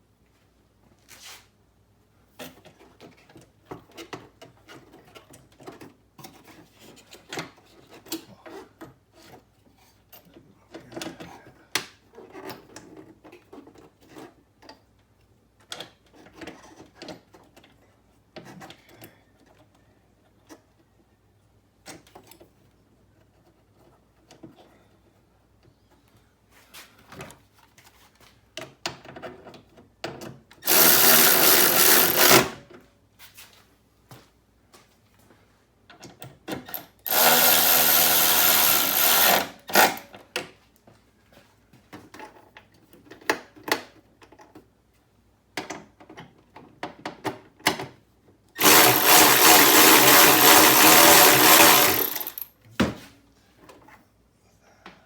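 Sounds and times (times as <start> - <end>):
power drill driving bolts: 30.6 - 32.6, 36.7 - 40.1, 48.6 - 52.5.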